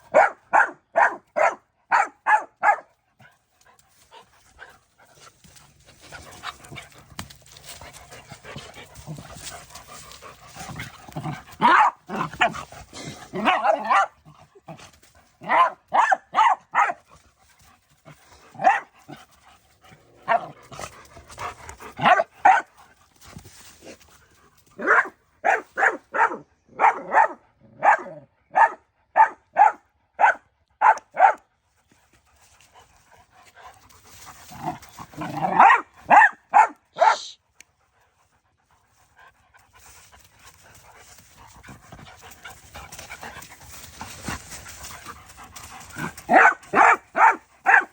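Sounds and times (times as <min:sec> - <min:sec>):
dog barking: 0:00.0 - 0:02.9, 0:11.6 - 0:12.6, 0:13.3 - 0:14.2, 0:15.4 - 0:17.0, 0:18.6 - 0:18.9, 0:22.0 - 0:22.7, 0:24.8 - 0:31.4, 0:35.4 - 0:37.4, 0:46.0 - 0:47.9.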